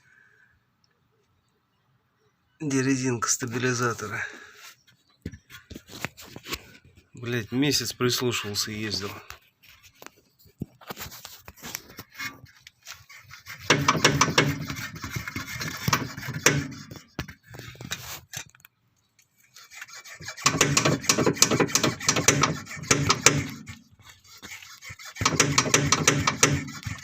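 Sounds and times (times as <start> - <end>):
metal part rattling and knocking: 13.6 - 17.4, 20.4 - 23.7, 25.2 - 27.0.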